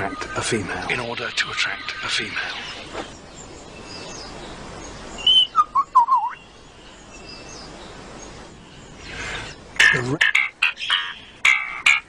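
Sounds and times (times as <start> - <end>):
faint steady hiss: 0.0 - 12.0
bird whistling call: 5.2 - 6.5.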